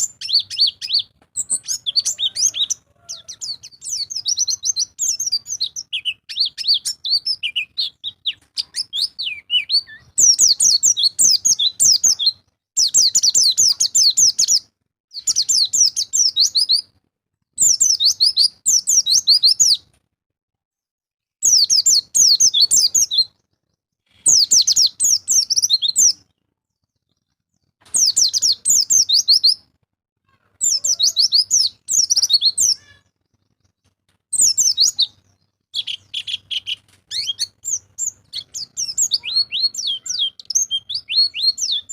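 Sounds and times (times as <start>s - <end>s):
bird twittering: 0.0s - 14.6s, 34.4s - 41.9s.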